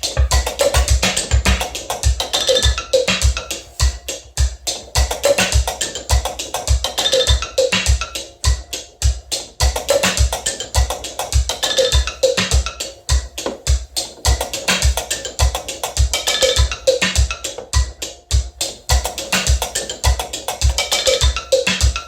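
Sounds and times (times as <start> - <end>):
low bass drum thumps: 0.0 - 2.2.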